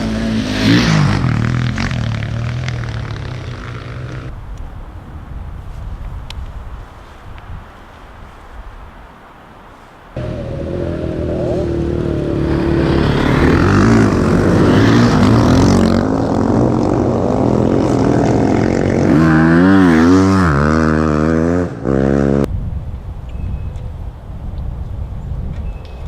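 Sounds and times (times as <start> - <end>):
dirt bike engines revving: 0.0 - 4.3, 10.2 - 22.5.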